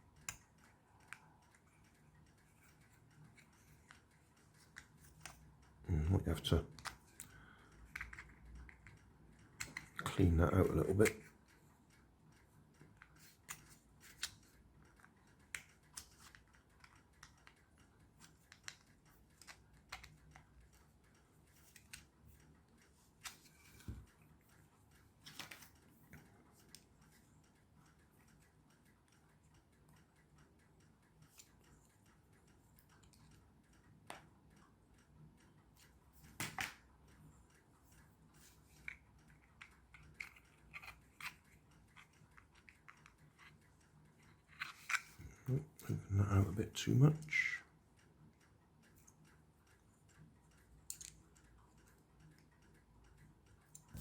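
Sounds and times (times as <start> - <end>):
hand tool clicking and scraping plastic: 38.7 - 43.6, 44.2 - 45.3.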